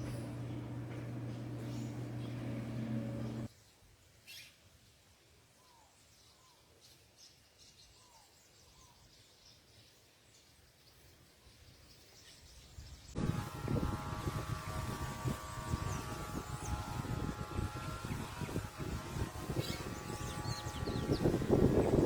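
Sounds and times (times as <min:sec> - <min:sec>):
birds chirping: 0:00.0 - 0:03.5, 0:13.0 - 0:22.0
faint high bird tweets: 0:00.0 - 0:03.5, 0:04.2 - 0:04.6, 0:05.6 - 0:13.2
loud humming with steady tones: 0:00.0 - 0:03.5, 0:13.2 - 0:22.0.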